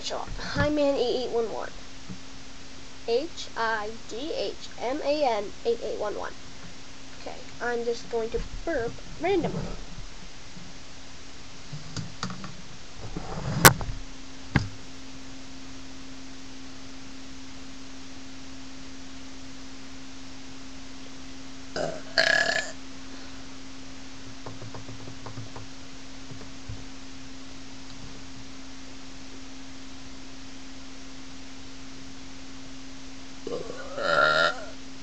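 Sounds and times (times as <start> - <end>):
boy burping: 21.8 - 22.8, 33.5 - 34.7.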